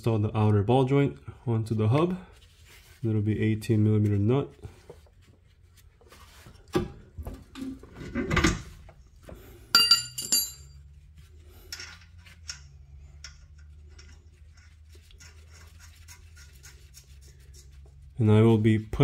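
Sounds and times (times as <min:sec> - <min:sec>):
sharp metallic clinks: 0:09.8 - 0:10.8.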